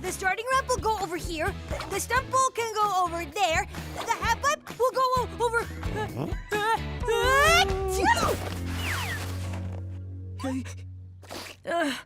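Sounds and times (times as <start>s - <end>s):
children's background music: 0.0s - 9.4s.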